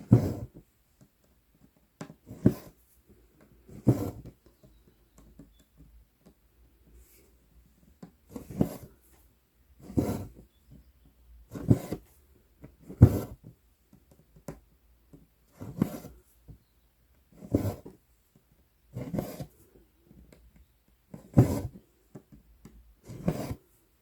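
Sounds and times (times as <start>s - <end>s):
thread rasping through cloth: 9.8s - 12.1s, 17.4s - 18.0s, 23.0s - 23.6s.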